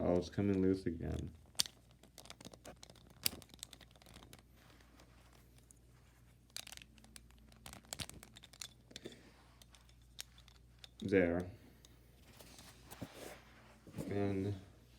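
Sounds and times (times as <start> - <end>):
plastic cube pieces clicking: 1.1 - 4.4, 6.5 - 11.1.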